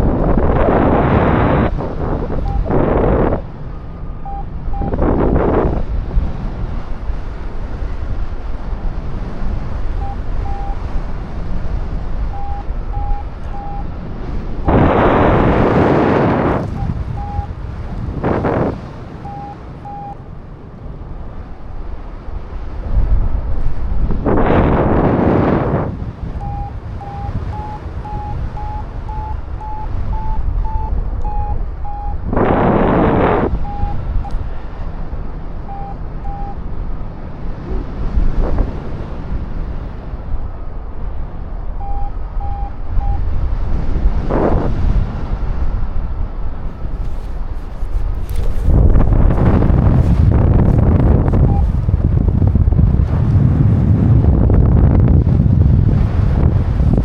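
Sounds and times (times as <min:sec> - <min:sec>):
wind buffeting microphone: 0:00.0 - 0:57.0
short electronic beeps: 0:02.4 - 0:03.4, 0:04.1 - 0:05.0, 0:10.0 - 0:10.9, 0:12.3 - 0:20.2, 0:26.4 - 0:34.4, 0:35.6 - 0:36.6, 0:41.8 - 0:43.3, 0:49.3 - 0:51.8.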